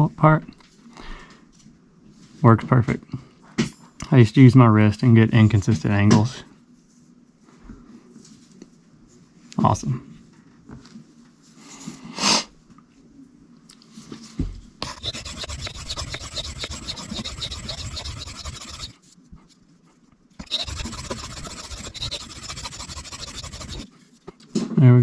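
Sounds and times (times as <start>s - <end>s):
knife scraping on sharpening plate: 14.8s - 19.0s, 20.4s - 23.9s.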